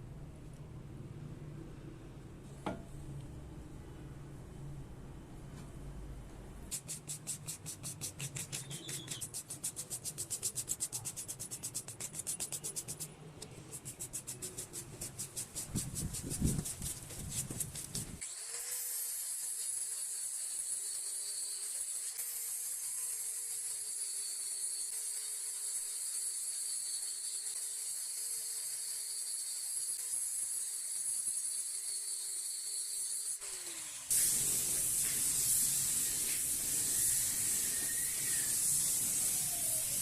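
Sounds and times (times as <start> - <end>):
rapid scrubbing strokes on metal: 6.7 - 30.7, 31.5 - 40.0
steady hiss: 34.0 - 40.0.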